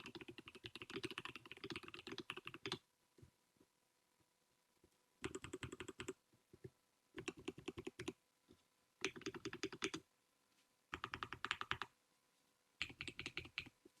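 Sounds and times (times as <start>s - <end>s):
mechanical keyboard clacking: 0.0s - 2.8s, 12.8s - 13.7s.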